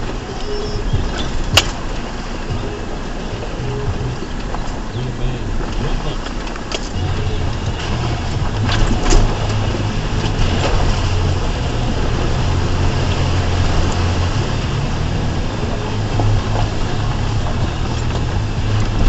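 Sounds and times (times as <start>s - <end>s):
truck engine at low revs: 0.0s - 19.0s.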